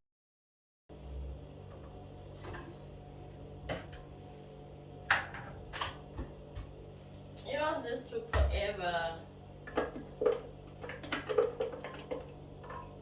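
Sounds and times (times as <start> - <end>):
kitchen items clattering: 9.7 - 13.0.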